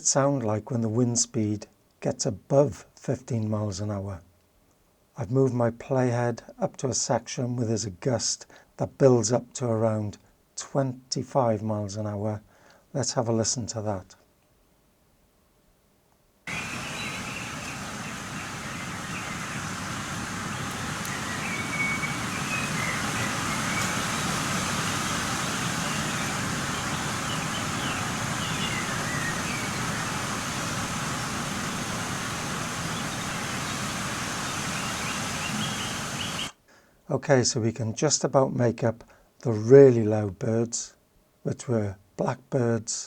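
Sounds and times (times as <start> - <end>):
faint bird calls: 16.5 - 36.6
wind rushing through foliage: 16.5 - 36.6.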